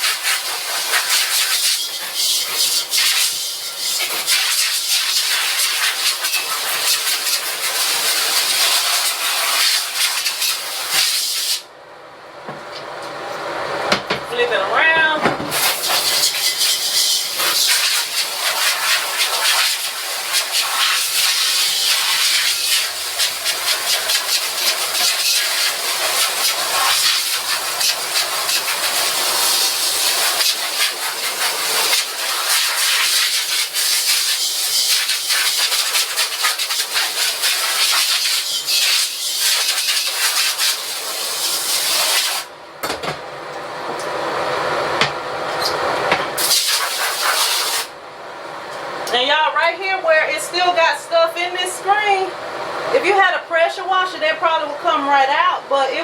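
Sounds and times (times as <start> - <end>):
water spray hissing: 0.0 - 11.6, 15.6 - 42.5, 46.4 - 47.9.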